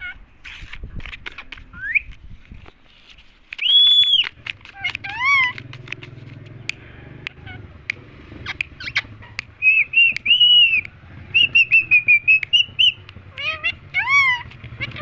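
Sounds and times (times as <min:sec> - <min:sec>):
sharp clicks: 0:03.4 - 0:13.5
parrot shrill whistled calls: 0:11.4 - 0:15.0.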